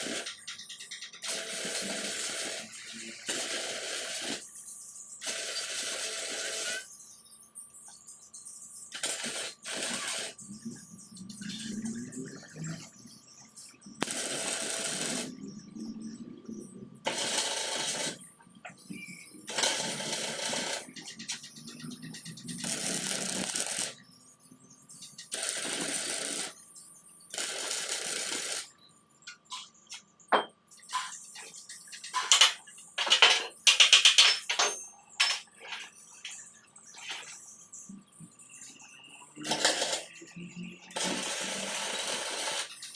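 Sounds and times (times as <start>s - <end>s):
bursts of crackling noise: 14.0s - 15.3s
sharp metallic clicks and clinks: 29.2s - 36.4s.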